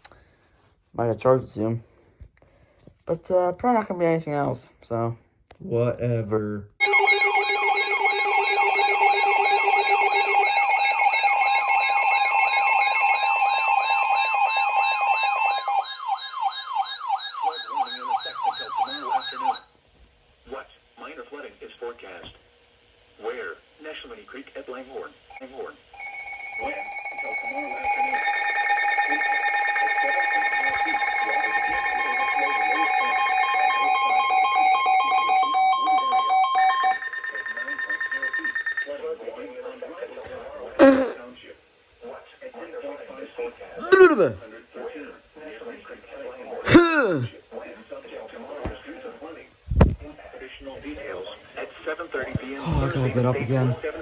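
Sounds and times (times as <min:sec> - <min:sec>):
siren-like alarm sweeps: 0:06.8 - 0:19.6, 0:26.0 - 0:38.9
steady alert tones: 0:06.8 - 0:19.6, 0:26.0 - 0:38.9.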